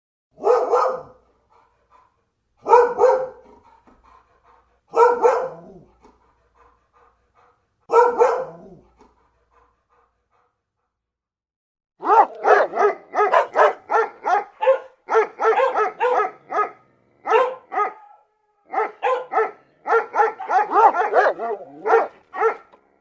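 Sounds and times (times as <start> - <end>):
dog barking: 0.3 - 1.3, 2.6 - 3.7, 4.9 - 5.9, 7.9 - 8.9, 12.0 - 22.8.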